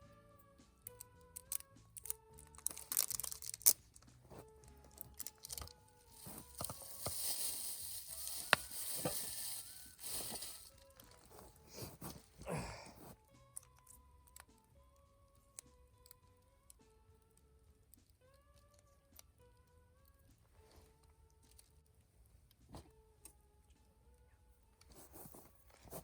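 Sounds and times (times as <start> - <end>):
soft instrumental music: 0.0 - 26.0
rustling hiss: 6.1 - 12.4.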